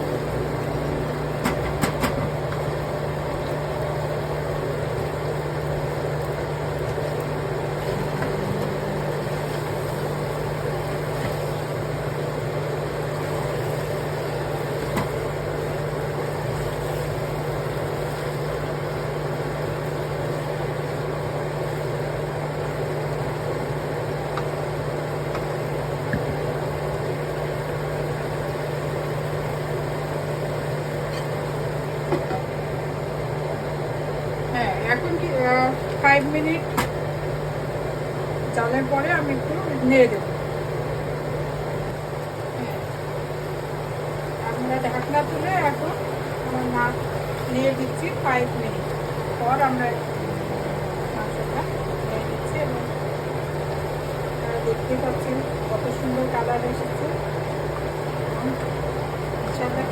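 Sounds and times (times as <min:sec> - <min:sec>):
steady mechanical hum: 0:00.0 - 0:59.9.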